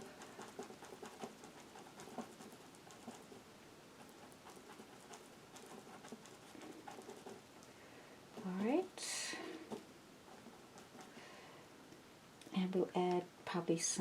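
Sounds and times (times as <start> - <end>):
brush dabbing paint on canvas: 0.0 - 7.7, 8.3 - 11.3.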